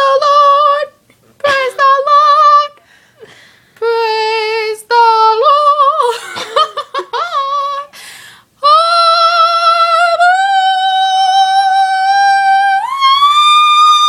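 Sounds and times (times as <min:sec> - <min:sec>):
woman singing without words: 0:00.0 - 0:02.9, 0:03.8 - 0:08.0, 0:08.6 - 0:14.0
short breath: 0:02.8 - 0:03.8, 0:07.9 - 0:08.6.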